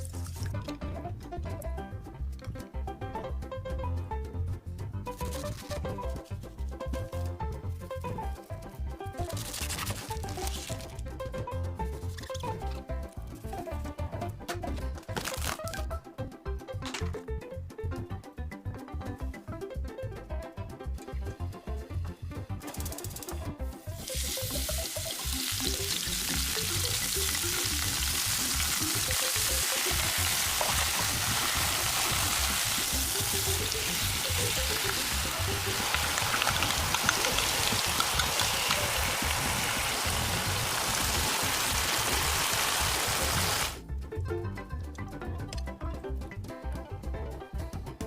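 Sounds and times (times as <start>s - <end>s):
food sizzling in a hot pan: 24.0s - 43.8s.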